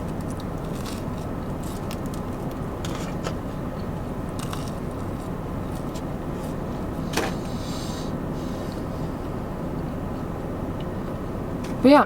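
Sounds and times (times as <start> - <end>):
steady low hum: 0.0 - 12.0
person chewing: 4.3 - 6.6.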